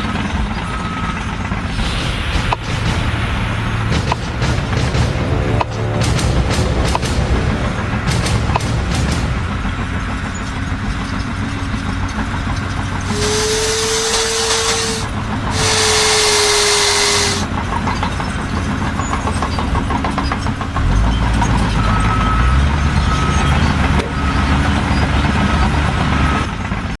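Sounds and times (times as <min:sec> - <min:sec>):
air hiss with falling tone: 0:13.1 - 0:17.5.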